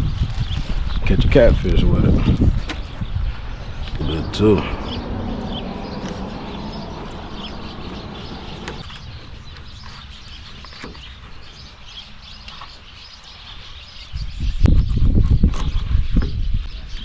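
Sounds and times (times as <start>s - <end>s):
small birds chirping: 0.0s - 17.0s
loud low rumble: 1.8s - 9.5s.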